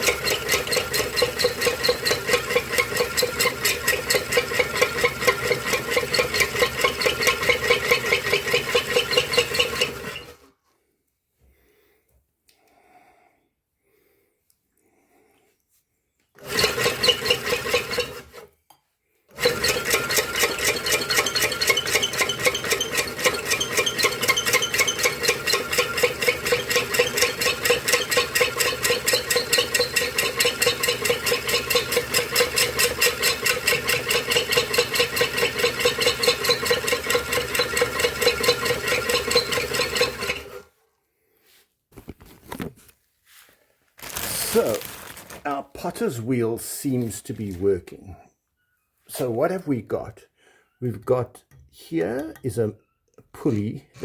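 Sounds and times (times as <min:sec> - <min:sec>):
potter's wheel motor rattling: 0:00.0 - 0:10.4, 0:16.4 - 0:18.5, 0:19.3 - 0:40.7.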